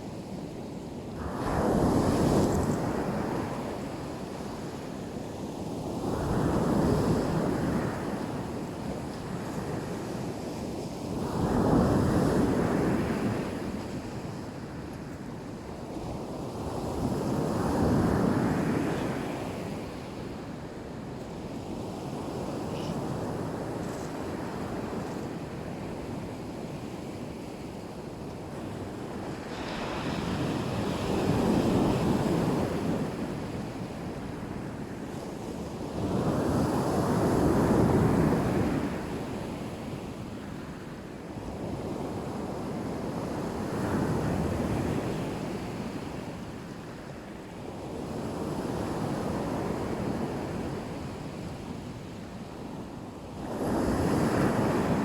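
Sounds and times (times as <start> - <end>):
waves breaking on shore: 28.1 - 35.0.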